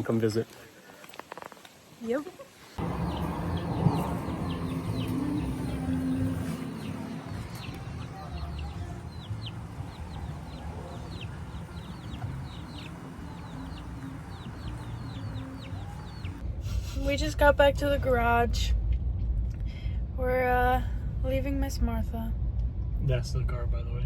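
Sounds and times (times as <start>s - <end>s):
birds chirping: 2.0s - 16.4s
steady low rumble: 2.8s - 24.0s.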